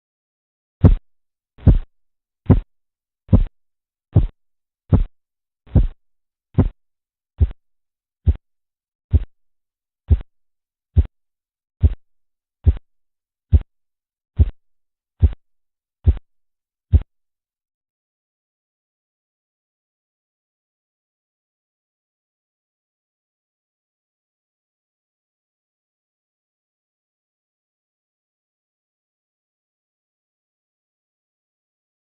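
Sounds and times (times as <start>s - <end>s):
pulse beats through stethoscope: 0.8s - 1.0s, 1.6s - 1.9s, 2.5s - 2.7s, 3.3s - 5.1s, 5.7s - 6.0s, 6.6s - 6.8s, 7.4s - 7.6s, 8.2s - 8.5s, 9.1s - 9.4s, 10.0s - 10.3s, 11.0s - 11.2s, 11.8s - 12.9s, 13.5s - 13.7s, 14.4s - 14.6s, 15.2s - 15.4s, 16.0s - 16.3s.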